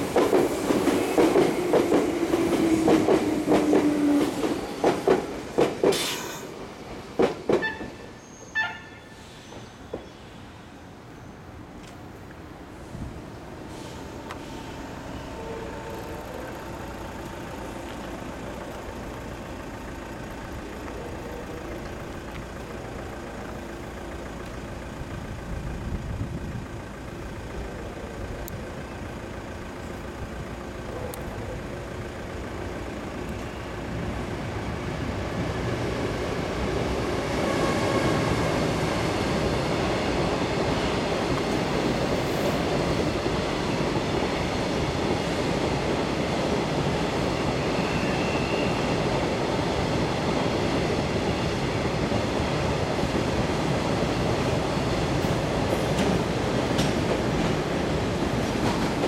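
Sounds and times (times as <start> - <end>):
train running past: 0.0 - 59.0.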